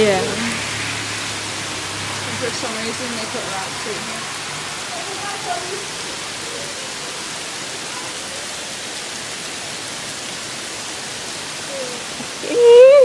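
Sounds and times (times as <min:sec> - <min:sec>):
heavy rain pouring: 0:00.0 - 0:13.0.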